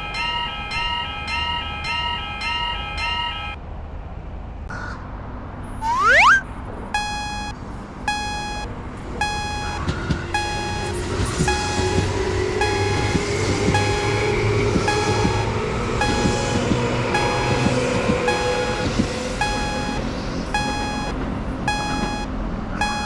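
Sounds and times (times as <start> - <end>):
level-crossing warning bell: 0.0 - 3.6, 7.0 - 7.5, 8.1 - 23.0
high-pitched crossing alarm: 5.8 - 6.4, 7.0 - 7.5, 8.1 - 23.0.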